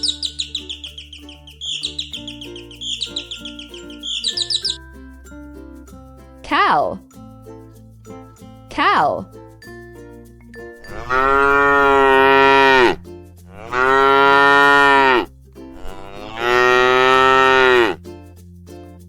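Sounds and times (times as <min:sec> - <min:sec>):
cow mooing: 0:10.9 - 0:18.0.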